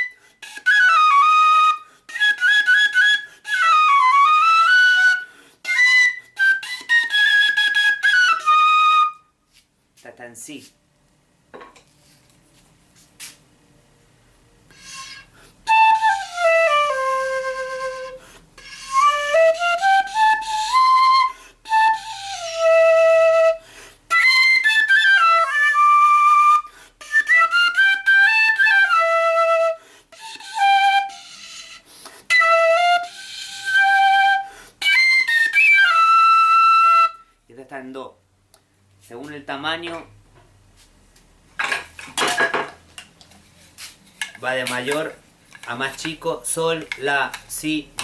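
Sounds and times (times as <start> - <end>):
flute melody: 0.0 - 9.4, 14.7 - 37.4.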